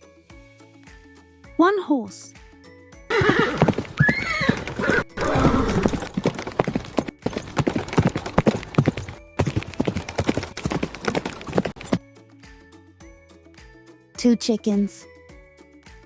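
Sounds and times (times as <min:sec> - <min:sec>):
horse whinnying: 0:03.1 - 0:08.8
hooves clip-clopping: 0:03.1 - 0:12.0.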